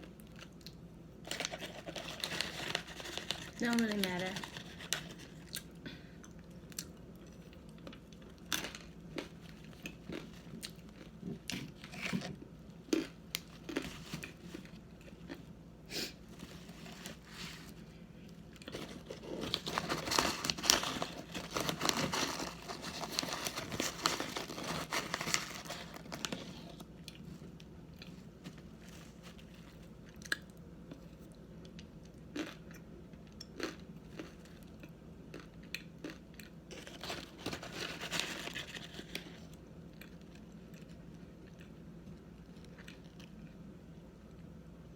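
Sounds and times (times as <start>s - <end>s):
packaging crinkling: 1.2s - 5.4s, 18.6s - 26.9s, 36.7s - 39.4s.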